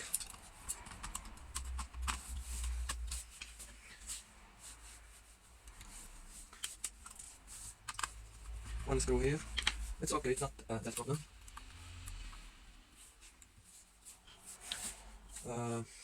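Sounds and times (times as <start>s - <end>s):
light clicks and taps of parts: 0.0s - 4.2s
low rumble: 8.1s - 13.0s.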